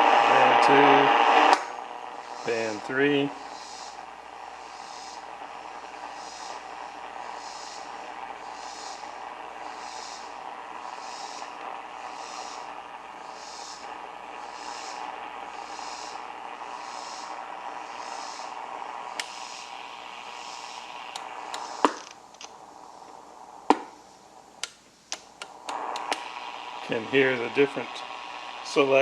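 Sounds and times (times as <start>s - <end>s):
radio static hiss: 0.0s - 29.0s
switch clicks: 24.6s - 26.3s.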